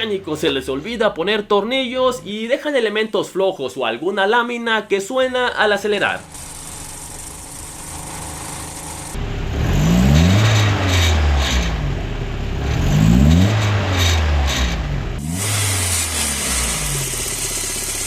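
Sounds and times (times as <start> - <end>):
exhaust manifold rattle: 6.0 - 9.2, 15.4 - 18.0
car engine idling and revving: 6.3 - 18.0.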